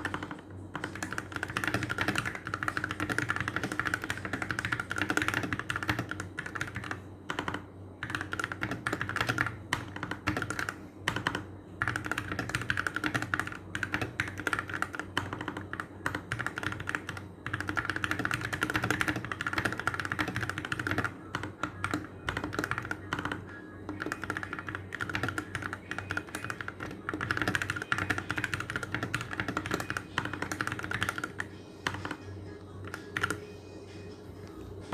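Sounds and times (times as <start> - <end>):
mechanical keyboard typing: 0.0 - 33.4
background music: 28.2 - 34.9.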